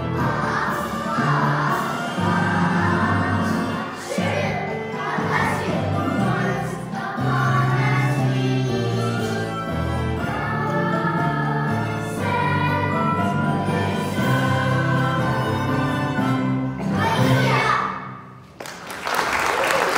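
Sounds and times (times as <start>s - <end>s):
choir singing: 0.0s - 18.2s
musical accompaniment: 0.0s - 18.6s.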